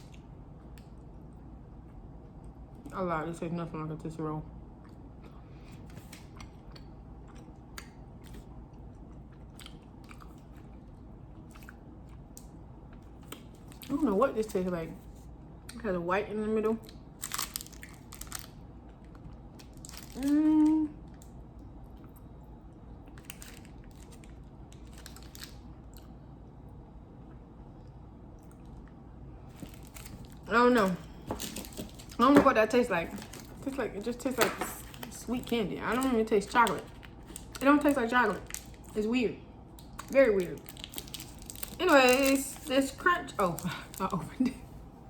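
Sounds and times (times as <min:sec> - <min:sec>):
person chewing: 0:06.1 - 0:13.9.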